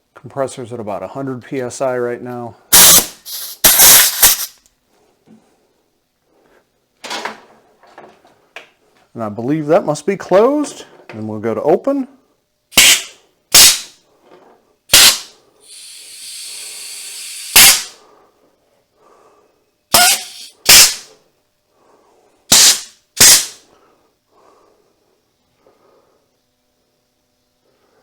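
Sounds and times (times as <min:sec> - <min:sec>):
hiss of escaping air: 0:02.7 - 0:04.6, 0:12.8 - 0:13.9, 0:14.9 - 0:18.0, 0:19.9 - 0:21.1, 0:22.5 - 0:23.6
pneumatic vise air pops: 0:02.7 - 0:04.6, 0:12.7 - 0:14.0, 0:14.9 - 0:18.0, 0:19.9 - 0:21.1, 0:22.5 - 0:23.6.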